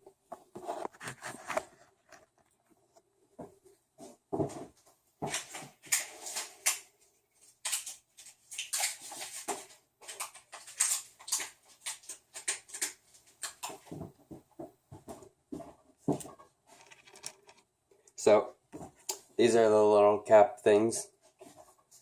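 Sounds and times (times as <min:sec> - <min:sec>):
handling rustles and clicks: 0:07.6 - 0:18.2.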